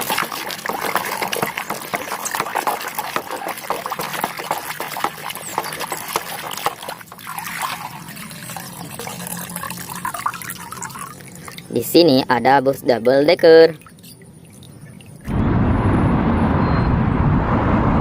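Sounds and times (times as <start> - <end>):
wet slime squelching and popping: 0.0 - 7.7
water splashes: 0.0 - 15.3.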